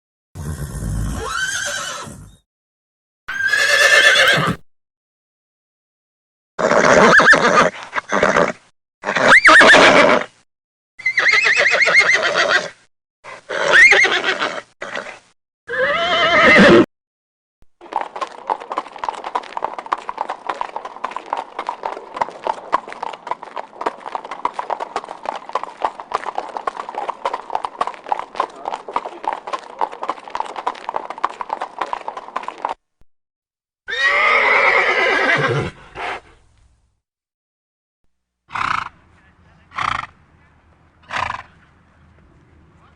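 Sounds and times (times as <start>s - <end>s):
horse neighing: 0.4s - 2.4s, 3.3s - 4.6s, 6.6s - 10.3s, 11.0s - 12.7s, 13.5s - 16.9s, 33.9s - 36.2s
clatter of hooves: 17.8s - 32.8s.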